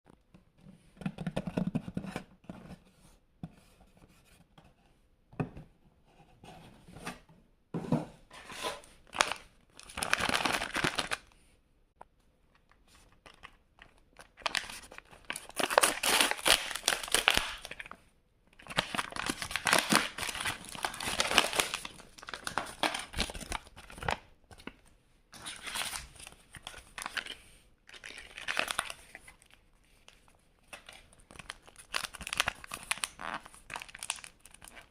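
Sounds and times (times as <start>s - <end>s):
packets tearing and crinkling: 9.1s - 11.3s, 13.4s - 17.9s, 18.6s - 24.2s, 25.4s - 29.5s, 30.7s - 34.9s.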